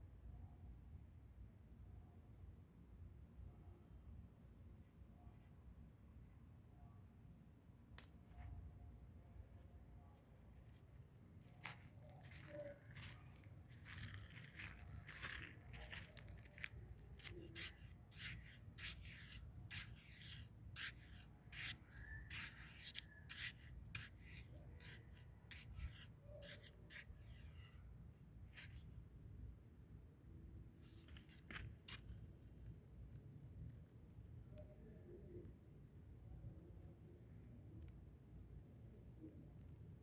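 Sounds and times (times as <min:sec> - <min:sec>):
dry leaves and twigs crackling: 0:11.4 - 0:24.4.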